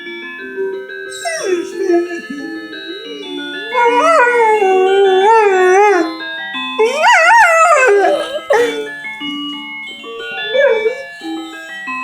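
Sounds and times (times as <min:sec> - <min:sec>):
dog howling: 0:01.1 - 0:06.2, 0:06.8 - 0:08.9, 0:10.3 - 0:11.2
phone alarm ringtone: 0:01.2 - 0:12.0.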